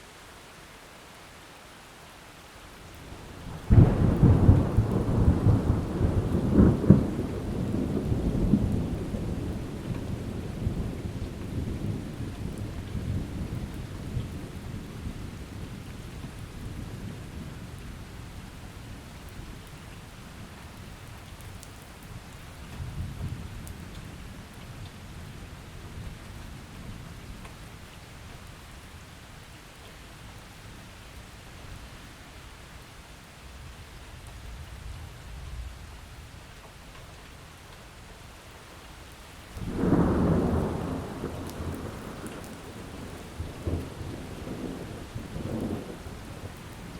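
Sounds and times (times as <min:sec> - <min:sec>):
steady rain: 0:00.0 - 0:46.9
rolling thunder: 0:03.5 - 0:17.8, 0:39.6 - 0:46.9.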